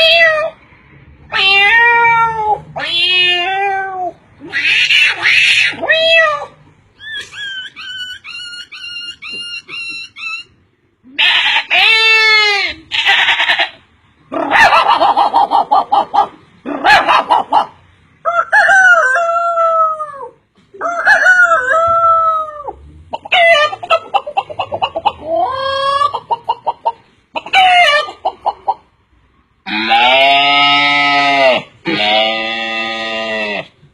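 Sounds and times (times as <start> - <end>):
man imitating chickens: 14.4 - 28.8, 29.7 - 33.8.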